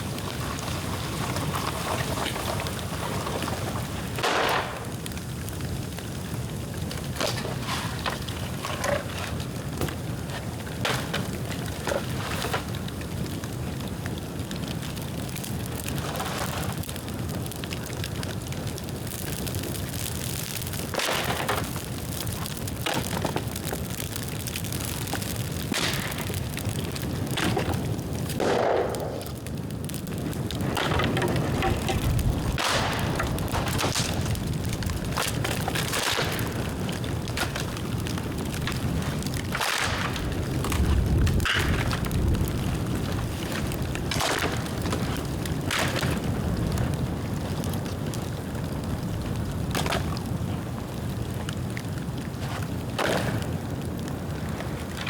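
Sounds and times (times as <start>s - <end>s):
bamboo fire crackling and popping: 0.0s - 55.0s.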